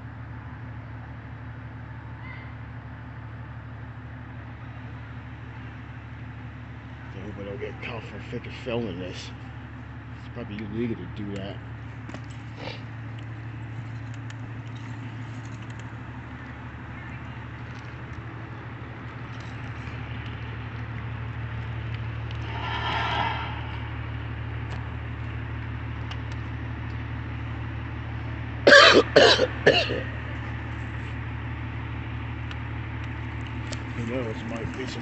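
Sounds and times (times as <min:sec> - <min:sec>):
fire trucks idling: 0:00.0 - 0:35.0
person coughing: 0:28.7 - 0:30.1.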